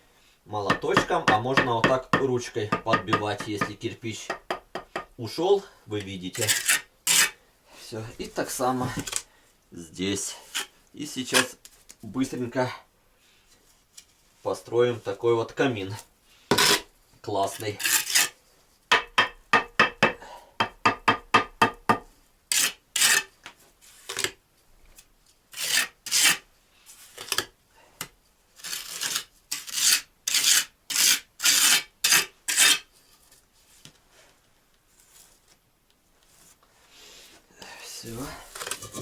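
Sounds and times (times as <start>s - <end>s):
trowel scraping mortar on bricks: 0.7s - 5.1s, 6.4s - 7.4s, 16.5s - 16.9s, 17.6s - 18.4s, 21.9s - 23.3s, 25.5s - 26.4s, 28.6s - 32.9s, 38.1s - 39.0s.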